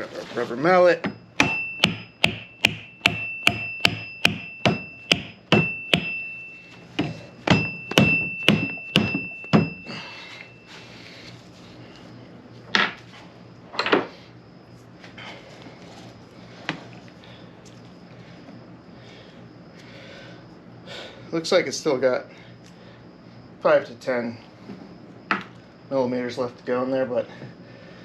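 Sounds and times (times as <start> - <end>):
rubber mallet blows on metal: 1.4 - 6.3.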